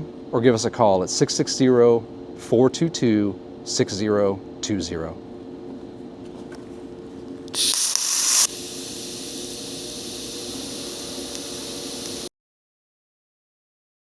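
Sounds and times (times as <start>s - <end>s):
hiss: 7.6s - 12.3s
low hum: 7.6s - 12.3s.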